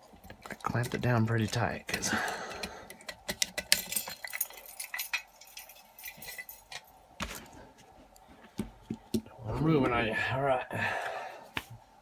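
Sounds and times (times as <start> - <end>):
small metal pieces clinking: 3.2 - 6.9.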